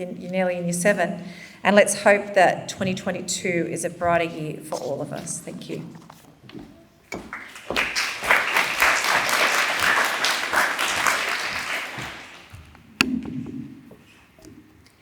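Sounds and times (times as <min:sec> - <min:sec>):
audience applauding: 0:07.3 - 0:12.6.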